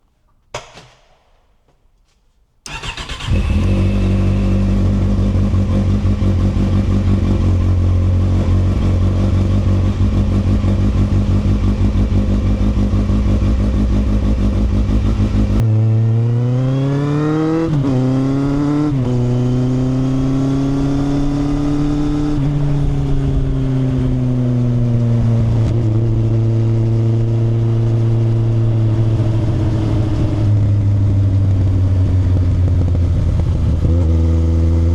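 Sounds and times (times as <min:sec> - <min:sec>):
motorcycle engine starting: 0:02.6 - 0:24.8
motorcycle engine idling and revving: 0:02.7 - 0:34.9.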